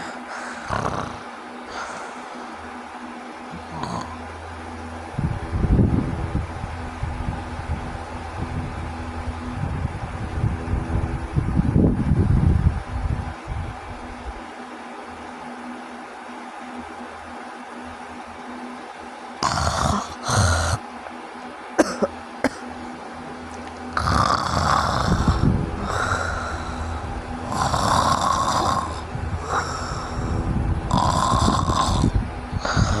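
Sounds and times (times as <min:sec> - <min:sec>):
person snoring heavily: 0:00.0 - 0:02.6, 0:03.5 - 0:04.6, 0:19.4 - 0:20.8, 0:23.8 - 0:33.0.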